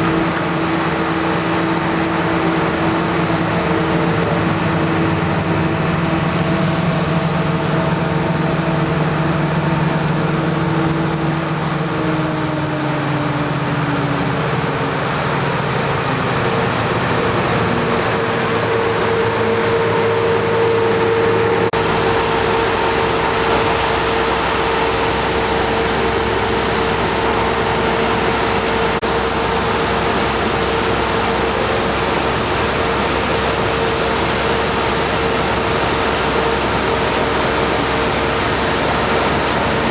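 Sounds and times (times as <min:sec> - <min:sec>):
heavy machinery engines droning: 0:00.0 - 0:39.9
rushing noise: 0:00.0 - 0:39.9
steady whine: 0:00.0 - 0:39.9.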